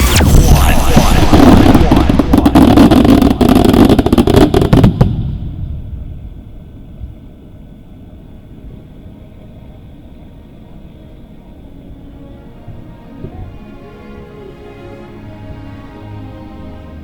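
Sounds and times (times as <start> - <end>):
fireworks bangs and crackles: 0.0 - 6.6
faint low rumble: 0.0 - 13.8.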